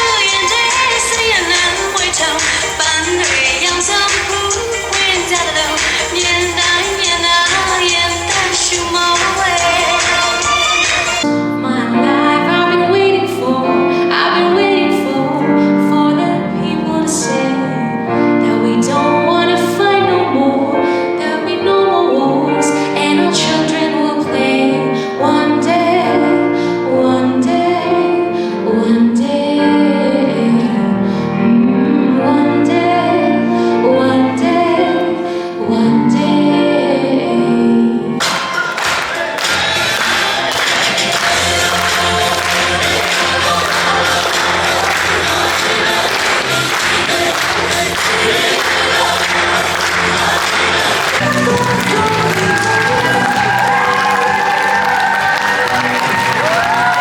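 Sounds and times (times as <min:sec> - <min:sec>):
woman singing slow melody: 0:00.0 - 0:38.2, 0:41.3 - 0:57.0
held music chords: 0:34.5 - 0:57.0.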